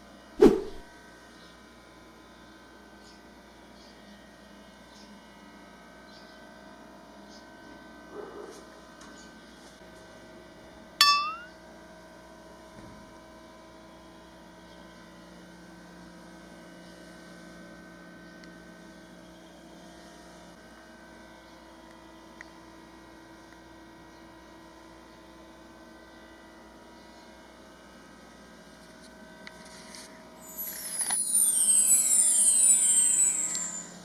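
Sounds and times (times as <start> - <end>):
steady hum of held tones: 1.0 - 34.0
sharp ringing clang: 11.0 - 11.5.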